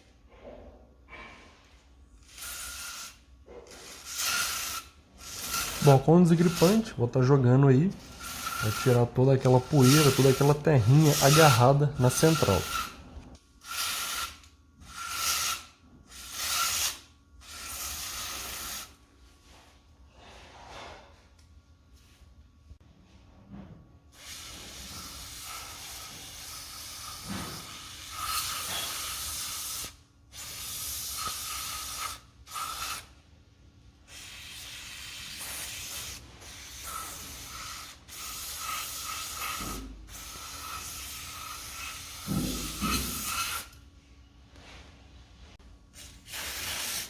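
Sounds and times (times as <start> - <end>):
aerosol spray hissing: 3.8 - 6.9, 8.2 - 12.9, 34.1 - 43.6.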